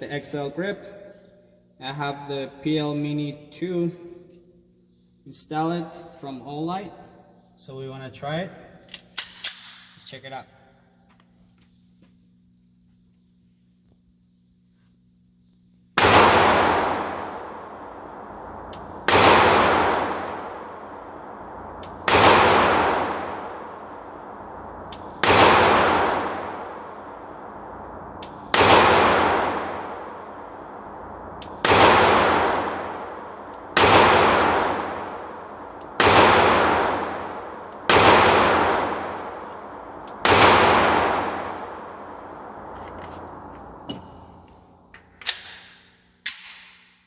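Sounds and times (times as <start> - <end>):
pistol shots with echo: 16.0 - 27.6, 28.2 - 30.7, 31.4 - 42.6.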